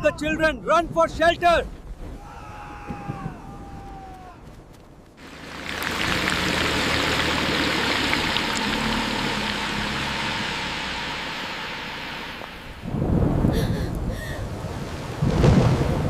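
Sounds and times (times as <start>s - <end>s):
heavy rain pouring: 5.2s - 16.0s.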